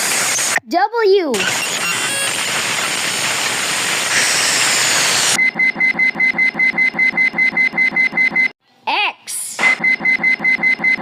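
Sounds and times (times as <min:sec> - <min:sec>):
cartoon alarm clock beeping: 0:09.8 - 0:11.0.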